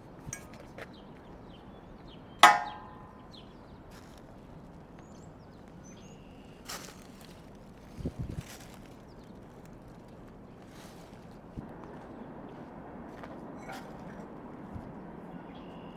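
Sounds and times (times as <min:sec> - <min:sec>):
metal clang: 0:00.3 - 0:00.6, 0:02.4 - 0:03.2
dull thumps: 0:02.4 - 0:03.1.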